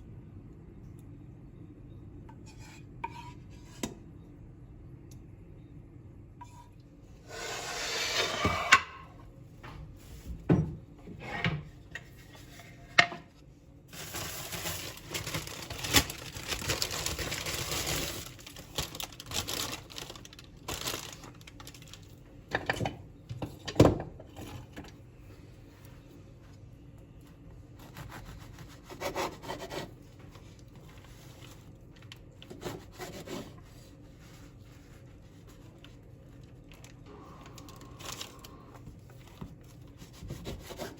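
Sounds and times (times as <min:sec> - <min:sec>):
scraping on wooden board: 0:07.3 - 0:09.0.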